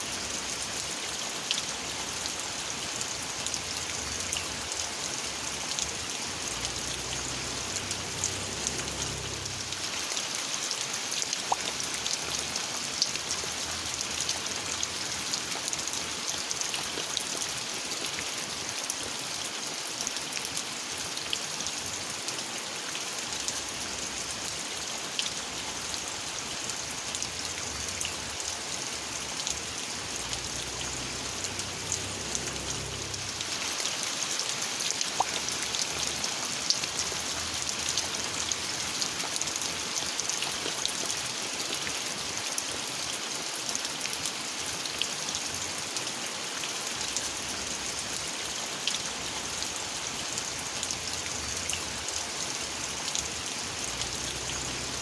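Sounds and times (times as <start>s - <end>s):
steady rain falling: 0.0s - 55.0s
raindrops ticking: 1.4s - 18.3s, 25.1s - 42.0s.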